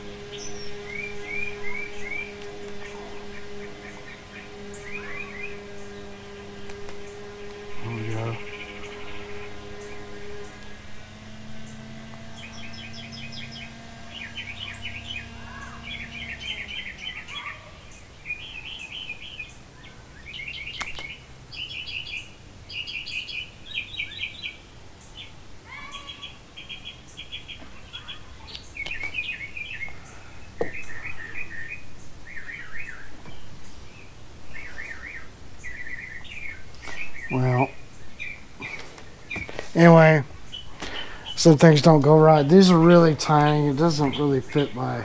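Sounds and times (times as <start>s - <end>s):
low steady hum: 0.0s - 25.6s, 26.4s - 45.0s
small birds chirping: 0.0s - 45.0s
sharp clicks: 20.8s - 21.2s.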